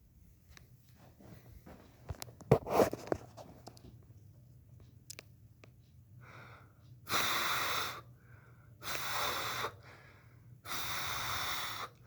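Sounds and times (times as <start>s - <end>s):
faint in-breaths: 6.2s - 12.0s.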